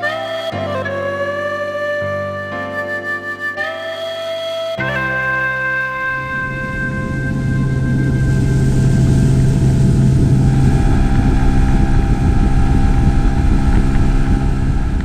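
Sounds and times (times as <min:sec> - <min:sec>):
outboard motor droning: 0:06.8 - 0:15.0.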